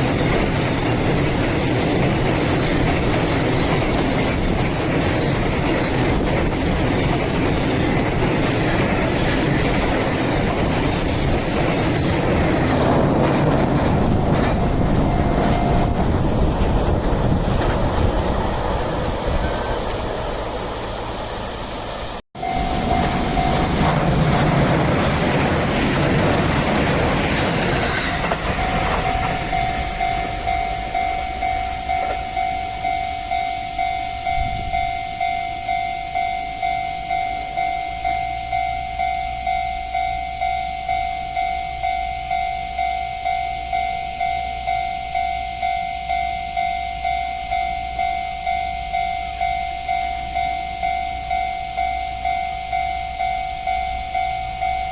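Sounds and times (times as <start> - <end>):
train wheels rumbling and clattering: 0.0 - 39.6
crossing warning bell ringing: 0.0 - 54.9.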